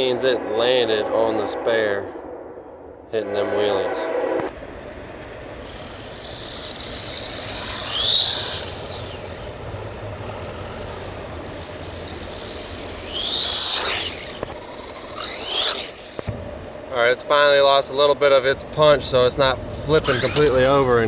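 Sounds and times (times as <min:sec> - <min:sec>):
toy truck motor whining: 0:05.6 - 0:16.3, 0:19.8 - 0:21.0.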